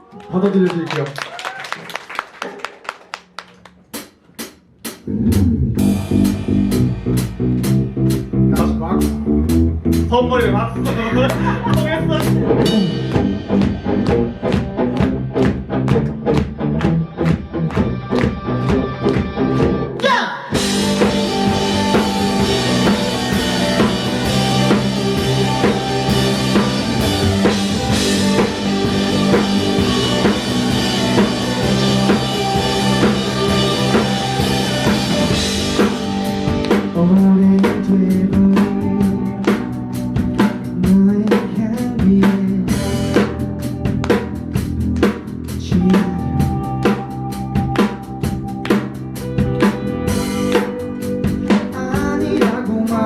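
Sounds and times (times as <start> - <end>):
rock band playing loud: 3.9 - 53.0
drum-kit ticks: 10.8 - 42.3.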